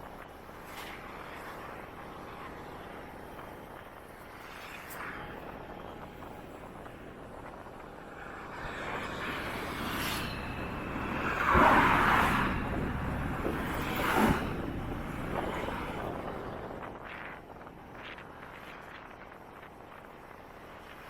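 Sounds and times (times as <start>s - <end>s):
road traffic passing: 5.4s - 16.9s
vehicle passing close: 8.2s - 16.6s.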